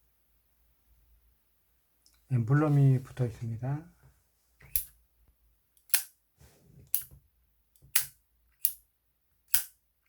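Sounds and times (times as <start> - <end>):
faint handling noise: 2.1 - 4.8
lighter lid clicking open and shut: 7.9 - 8.8.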